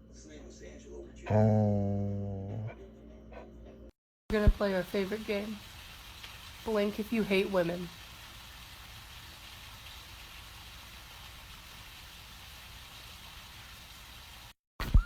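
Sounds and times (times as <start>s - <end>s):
faint hiss: 4.4s - 14.6s.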